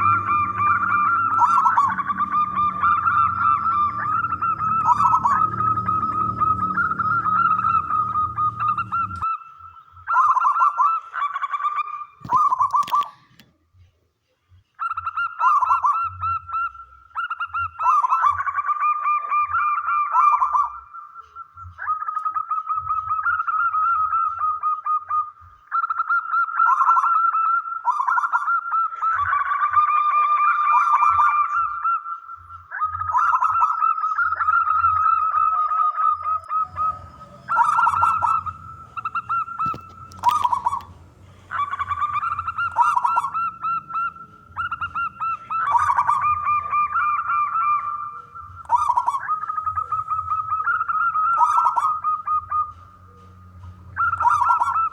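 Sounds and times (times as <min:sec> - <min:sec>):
low rumble: 0:00.0 - 0:09.3, 0:36.4 - 0:54.9
dove cooing: 0:00.0 - 0:13.4, 0:36.2 - 0:54.9.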